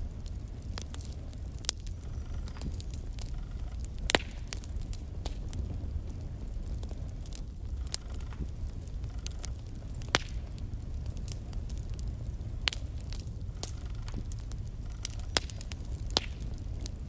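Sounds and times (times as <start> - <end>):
logs crackling and popping: 0.0 - 17.0
low rumble of flames: 0.0 - 17.0.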